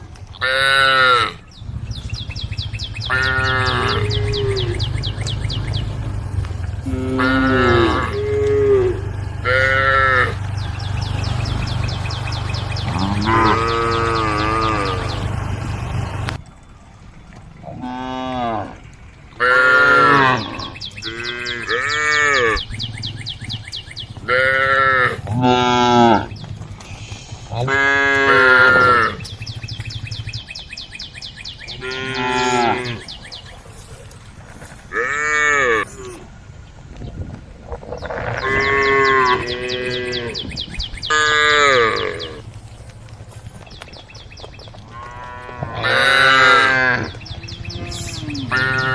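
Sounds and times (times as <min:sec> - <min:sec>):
cows mooing: 0:00.4 - 0:01.4, 0:03.0 - 0:16.4, 0:17.6 - 0:22.9, 0:24.1 - 0:29.5, 0:31.7 - 0:33.9, 0:34.9 - 0:36.3, 0:37.8 - 0:42.5, 0:44.9 - 0:48.9.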